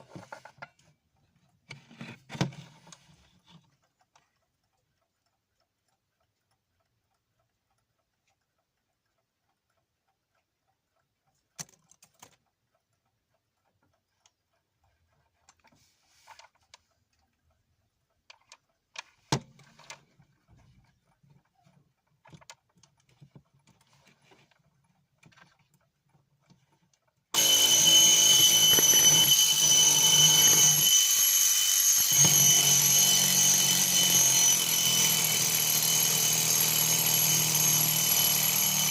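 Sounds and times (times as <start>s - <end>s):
alarm clock bell ringing: 27.4s - 38.9s.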